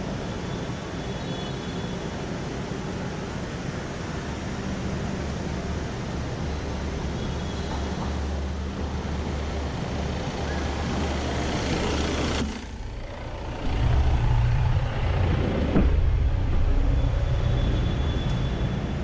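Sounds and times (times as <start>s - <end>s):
car engine and road noise: 0.0s - 19.0s.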